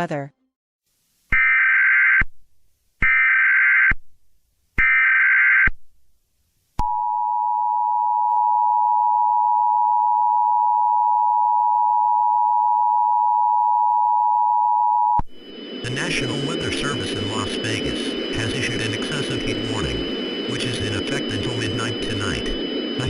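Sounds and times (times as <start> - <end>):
steady two-tone attention signal: 8.6 - 23.0
warbling data tones: 13.6 - 23.0.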